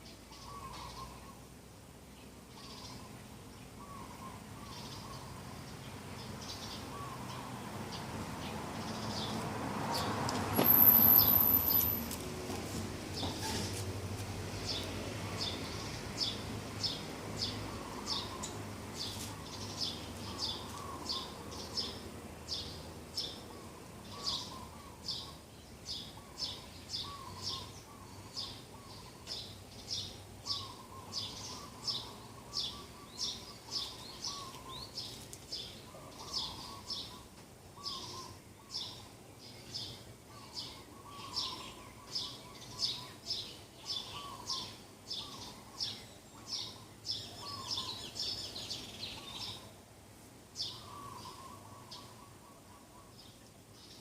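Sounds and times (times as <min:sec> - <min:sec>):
birds warbling: 0:00.3 - 0:01.4, 0:15.4 - 0:49.7, 0:50.6 - 0:54.0.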